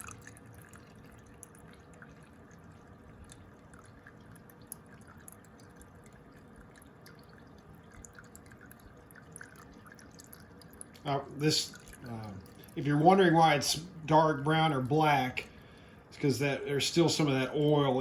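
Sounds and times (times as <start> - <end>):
small drip ticks: 0.0 - 12.9
fuel trickling into container: 0.0 - 18.0.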